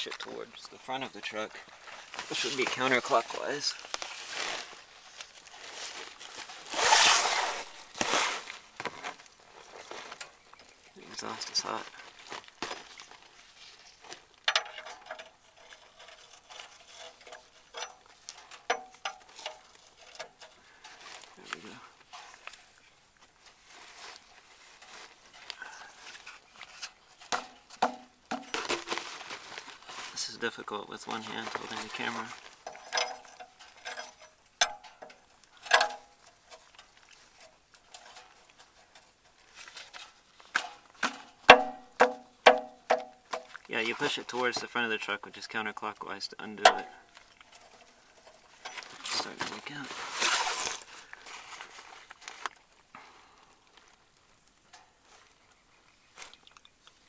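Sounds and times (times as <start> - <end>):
wrench clinking and scraping: 14.5 - 20.6, 32.6 - 36.7, 46.6 - 49.0
sharp metallic knock: 41.5 - 43.2, 46.7 - 46.9.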